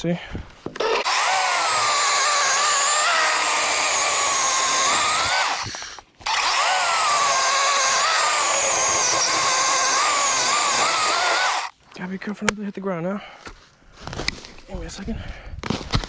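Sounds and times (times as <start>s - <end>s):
electric chainsaw cutting wood: 0.8s - 11.7s.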